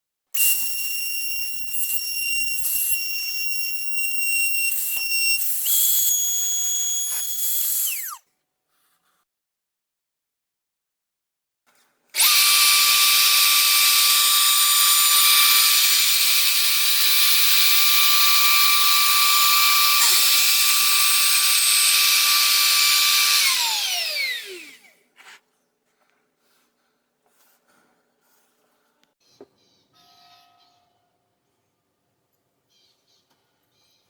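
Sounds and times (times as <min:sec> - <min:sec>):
router motor whining: 0:00.4 - 0:08.2, 0:12.2 - 0:25.0.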